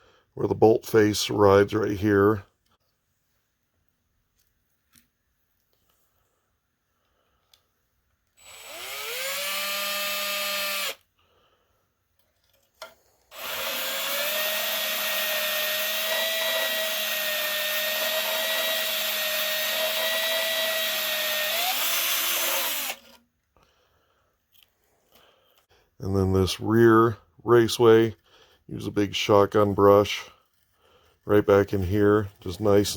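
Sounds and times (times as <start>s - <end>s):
power drill whining: 8.4s - 11.1s, 13.3s - 23.2s.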